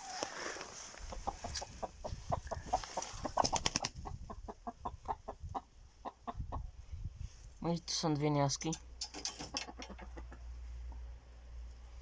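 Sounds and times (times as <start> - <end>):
chickens clucking: 0.0 - 6.8, 9.0 - 11.1.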